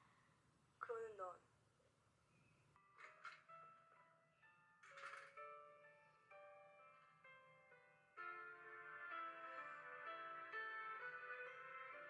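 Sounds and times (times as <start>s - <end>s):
soft piano-like keyboard music: 2.6s - 12.0s.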